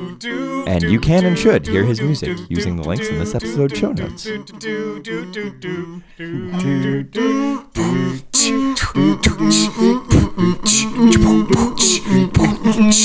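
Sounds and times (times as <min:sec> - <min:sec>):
person humming a melody: 0:06.3 - 0:13.0
person beatboxing: 0:07.8 - 0:13.0.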